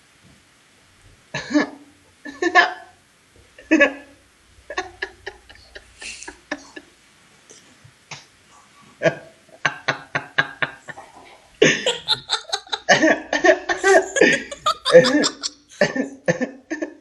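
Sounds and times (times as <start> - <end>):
man laughing: 4.7 - 6.8, 11.6 - 16.9.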